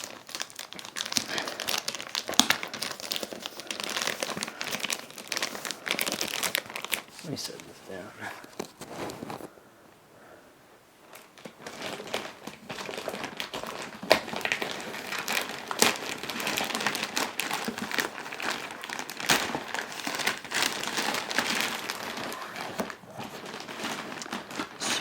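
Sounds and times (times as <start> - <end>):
packaging crinkling and rustling: 0.0 - 9.6, 11.0 - 25.0.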